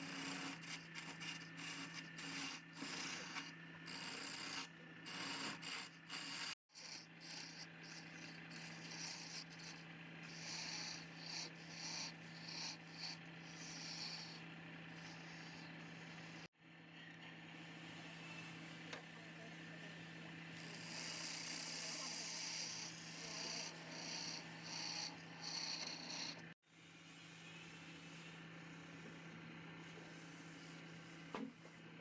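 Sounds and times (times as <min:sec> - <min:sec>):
rasping on spinning wood: 0:00.0 - 0:16.5, 0:20.5 - 0:31.8
wood lathe motor hum: 0:00.0 - 0:16.5, 0:20.4 - 0:26.6.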